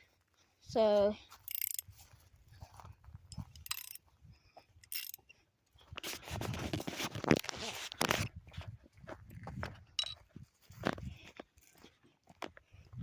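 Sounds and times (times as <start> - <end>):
metal tools clinking: 1.4 - 1.9, 3.3 - 4.0, 4.8 - 5.3
metal rattling and scraping: 1.5 - 1.8, 3.4 - 4.0, 4.8 - 5.2.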